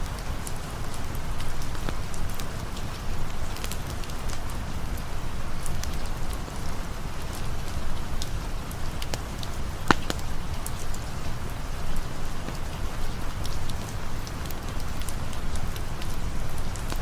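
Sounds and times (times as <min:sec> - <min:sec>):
steady rain falling: 0:00.0 - 0:17.0
sharp snap: 0:09.9 - 0:10.2.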